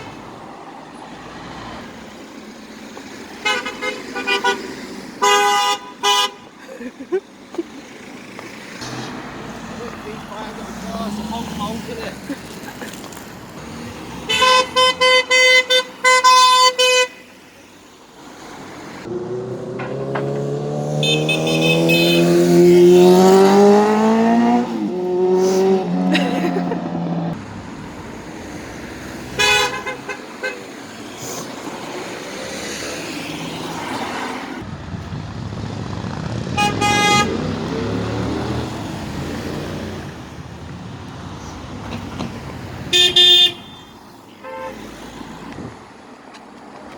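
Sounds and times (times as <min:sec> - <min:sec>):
road traffic noise: 0:00.0 - 0:46.9
car horns honking: 0:03.4 - 0:06.6, 0:14.1 - 0:17.5, 0:19.1 - 0:27.2, 0:29.2 - 0:30.9, 0:36.5 - 0:40.2, 0:41.8 - 0:45.0
vehicle engine accelerating past: 0:19.0 - 0:27.4, 0:34.7 - 0:42.8.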